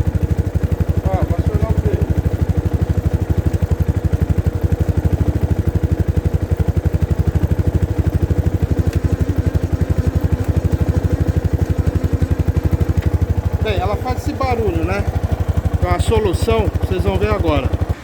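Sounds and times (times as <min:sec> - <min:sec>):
brake pads noise: 0:00.0 - 0:18.0
motorcycle engine idling: 0:00.0 - 0:18.0.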